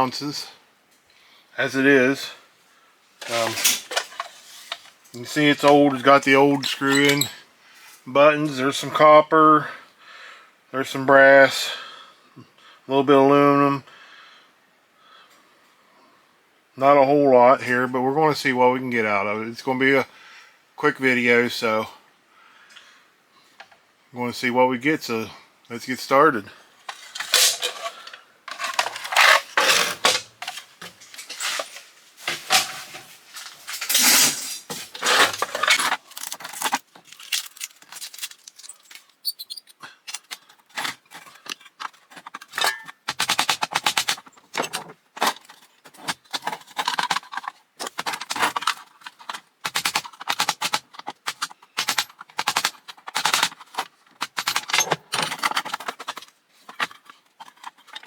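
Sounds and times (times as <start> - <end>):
metallic clicks and clanks: 5.6 - 7.4, 33.8 - 45.4, 46.0 - 58.0.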